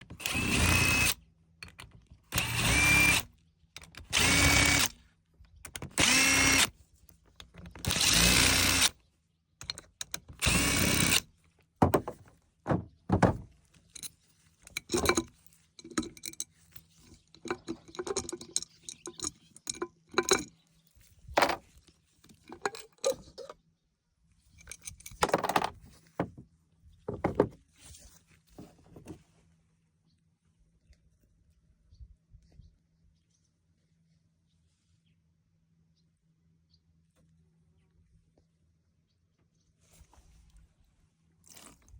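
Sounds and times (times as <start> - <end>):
power drill bursts: 0.2 - 1.2, 2.3 - 3.3, 4.1 - 5.0, 5.9 - 6.7, 7.8 - 8.9, 10.4 - 11.2
tools and parts clattering: 11.8 - 20.6, 21.2 - 23.6, 24.5 - 26.4, 27.1 - 27.6.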